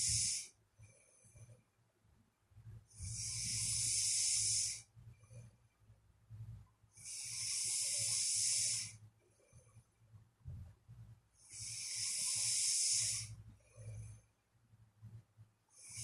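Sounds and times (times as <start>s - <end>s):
person snoring: 0.0s - 0.5s, 3.0s - 4.8s, 7.0s - 9.0s, 11.5s - 13.3s
faint low rumble: 4.8s - 7.0s, 9.0s - 11.5s.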